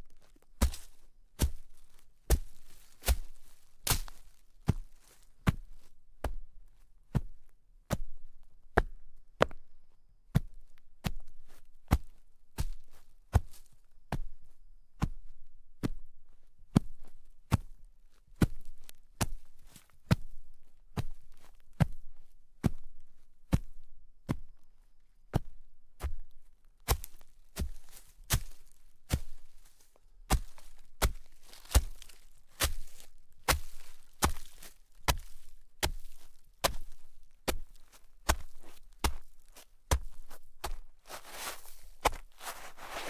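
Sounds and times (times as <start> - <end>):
footsteps in snow: 0.0 - 5.9, 26.9 - 43.0.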